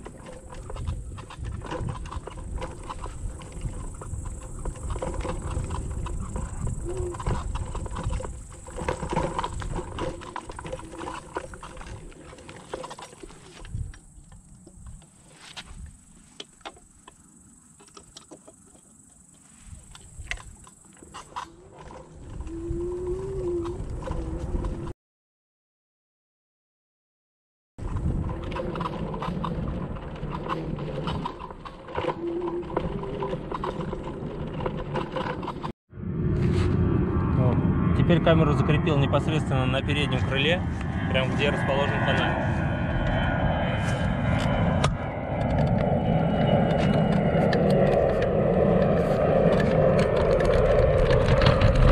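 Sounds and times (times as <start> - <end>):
scooter knocks and rattles: 0.0 - 13.8
electric scooter rattling and knocking: 0.0 - 15.6, 16.3 - 22.8, 23.6 - 24.9, 27.8 - 35.7, 43.0 - 51.9
low rumble: 35.9 - 51.9.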